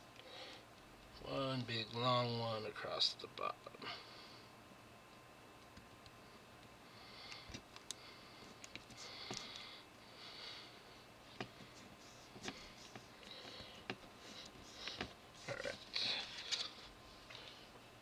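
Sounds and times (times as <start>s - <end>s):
masking tape rustling: 11.3s - 17.7s.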